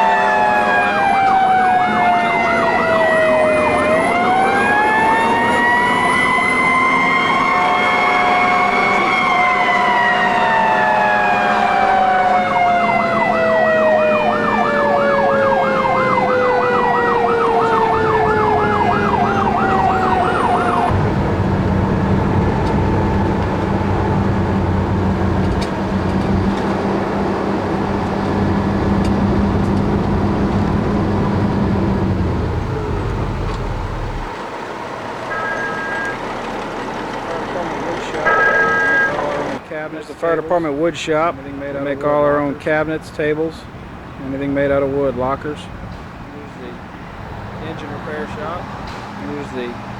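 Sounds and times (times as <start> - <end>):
fast yelping siren: 0.0 - 21.0, 35.3 - 36.5, 38.0 - 39.6
wailing siren: 0.0 - 34.4, 35.1 - 39.6
truck engine running: 6.9 - 39.6.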